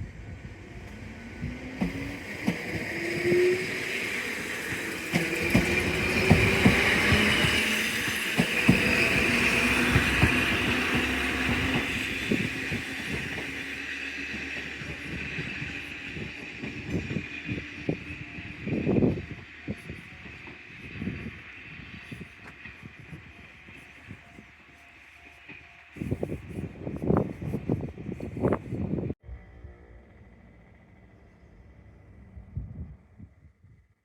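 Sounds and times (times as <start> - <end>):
train running on rails: 0.0 - 31.2
wheels clicking over track: 1.6 - 23.8.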